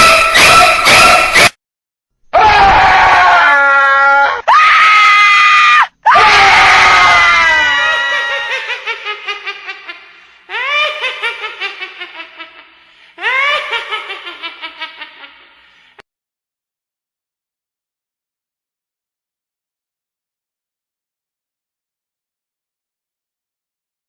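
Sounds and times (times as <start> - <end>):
high-pitched screams with echo: 0.0 - 1.5, 2.4 - 8.9.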